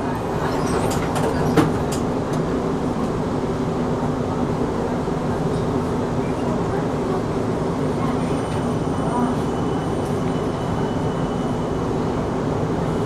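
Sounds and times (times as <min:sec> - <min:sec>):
tram rumble and hum: 0:00.0 - 0:13.0.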